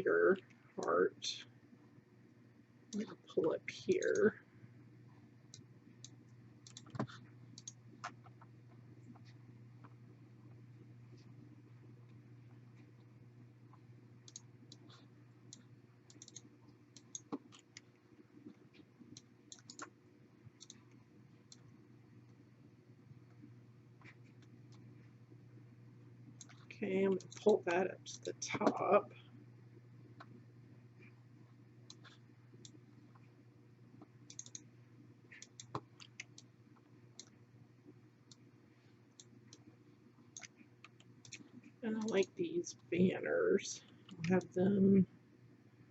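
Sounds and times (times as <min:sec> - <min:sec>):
low steady hum: 0:00.0 - 0:45.9
computer mouse clicks: 0:03.9 - 0:04.3, 0:05.5 - 0:10.0, 0:13.7 - 0:20.0, 0:20.6 - 0:21.7, 0:26.4 - 0:27.5, 0:28.1 - 0:28.4, 0:31.8 - 0:32.8, 0:34.0 - 0:34.7, 0:35.3 - 0:37.4, 0:39.1 - 0:39.6, 0:40.3 - 0:42.4
faint computer mouse clicks: 0:05.5 - 0:08.4, 0:14.2 - 0:17.8, 0:19.1 - 0:19.9, 0:20.6 - 0:21.6, 0:34.3 - 0:34.7, 0:35.4 - 0:36.5.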